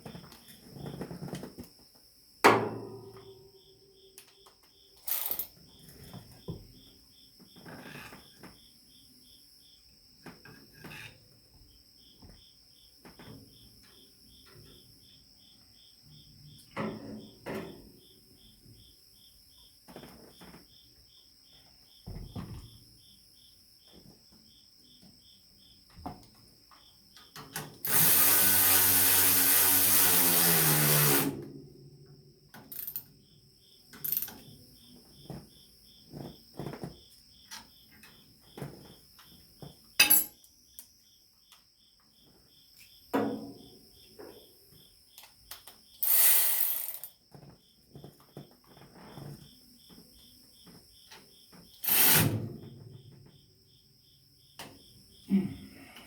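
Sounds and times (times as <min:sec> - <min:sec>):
crickets chirping: 0:00.0 - 0:56.0
tools knocking and clinking: 0:02.4 - 0:03.4, 0:32.5 - 0:33.1, 0:33.9 - 0:34.5, 0:40.0 - 0:40.5
power tool spinning down: 0:27.8 - 0:31.3.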